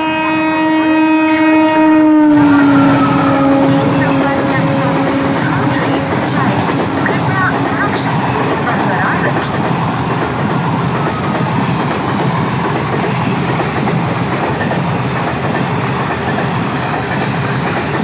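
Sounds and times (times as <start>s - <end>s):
train wheels rushing on rails: 2.2s - 18.0s.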